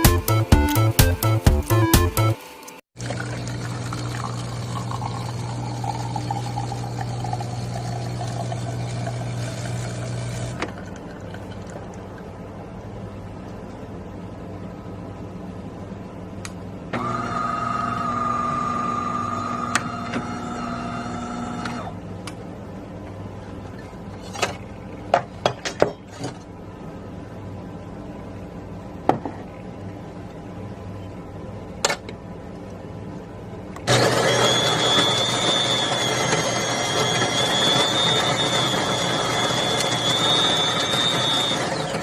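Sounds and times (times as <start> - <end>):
low steady hum: 3.0 - 16.9
small electric motor whirring: 33.9 - 42.0.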